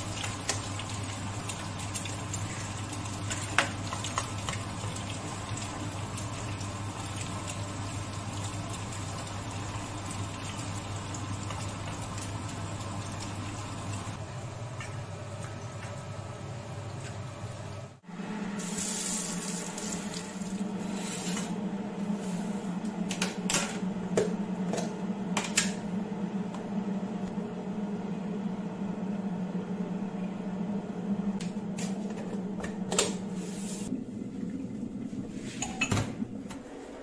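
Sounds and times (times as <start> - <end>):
steady low hum: 19.5 - 37.0.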